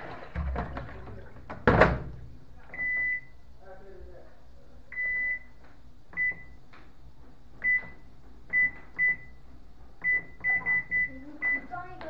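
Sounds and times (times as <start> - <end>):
electronic appliance beeps: 2.7 - 3.4, 4.9 - 5.6, 6.2 - 6.6, 7.6 - 9.4, 10.0 - 11.8.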